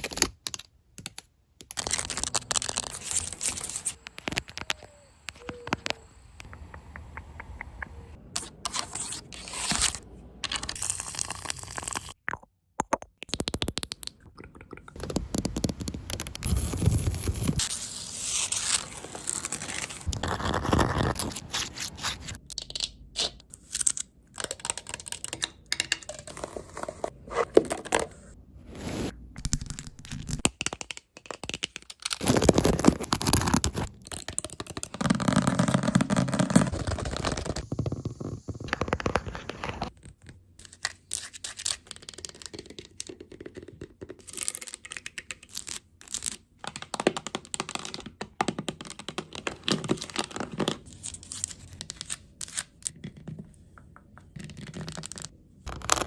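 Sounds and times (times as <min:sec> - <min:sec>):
scratching and scraping on objects: 0:01.8 - 0:06.6, 0:07.9 - 0:12.2, 0:15.0 - 0:22.4, 0:26.2 - 0:29.2.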